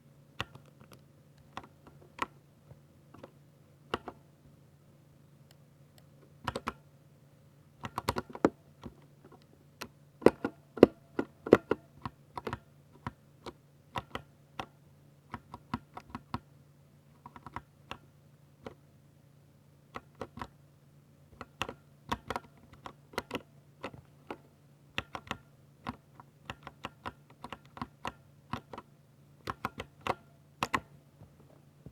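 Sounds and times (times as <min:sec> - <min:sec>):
mechanical keyboard typing: 0:06.4 - 0:06.8, 0:07.8 - 0:09.0, 0:17.2 - 0:18.0, 0:20.0 - 0:20.6, 0:21.4 - 0:30.9.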